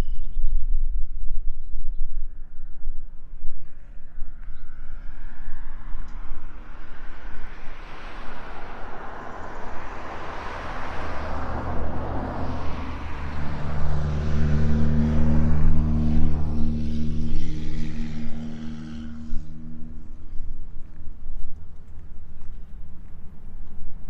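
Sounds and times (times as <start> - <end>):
low engine hum: 1.9 - 24.0
tyre and traffic noise: 4.5 - 24.0.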